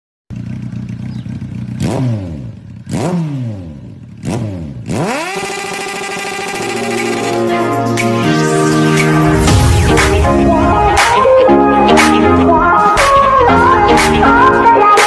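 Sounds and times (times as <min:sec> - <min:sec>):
motorcycle engine revving: 0:00.3 - 0:11.4
rising steady tone: 0:05.6 - 0:15.0.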